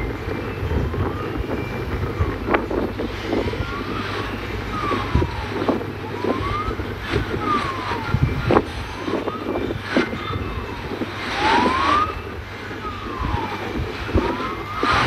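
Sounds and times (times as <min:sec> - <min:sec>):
faint gliding tones: 0:00.0 - 0:15.0
vehicle rumble: 0:00.0 - 0:15.0
wind buffeting microphone: 0:00.0 - 0:15.0.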